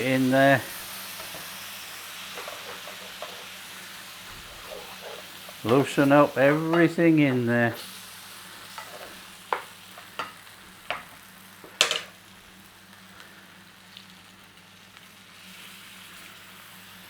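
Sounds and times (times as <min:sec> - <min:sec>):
vegetables sizzling in a frying pan: 0:00.0 - 0:17.0
utensil scraping a pan: 0:02.3 - 0:03.7, 0:04.3 - 0:07.9, 0:08.7 - 0:11.1.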